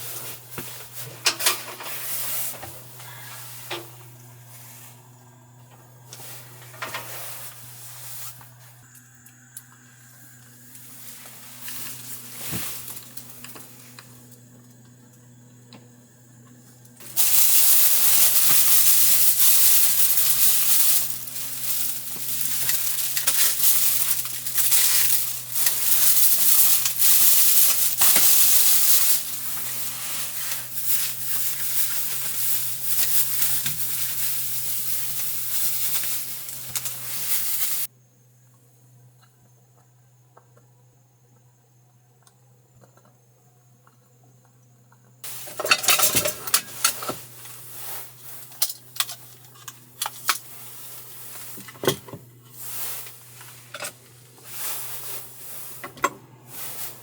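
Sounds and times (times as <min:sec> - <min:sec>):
loud steady hiss: 0:00.0 - 0:05.0, 0:17.0 - 0:37.9, 0:45.2 - 0:57.0
small hard objects clattering: 0:17.0 - 0:37.9, 0:45.2 - 0:57.0.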